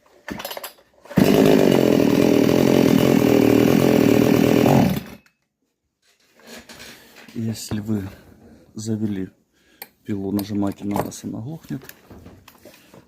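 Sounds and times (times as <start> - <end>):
chainsaw engine at high revs: 1.2 - 5.2.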